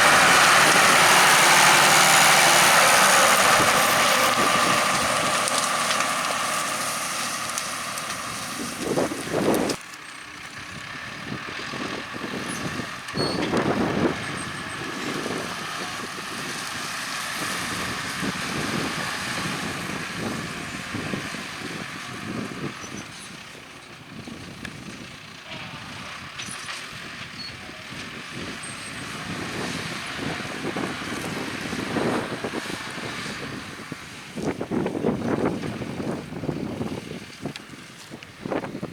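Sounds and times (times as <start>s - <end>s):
tractor engines running: 0.0s - 38.9s.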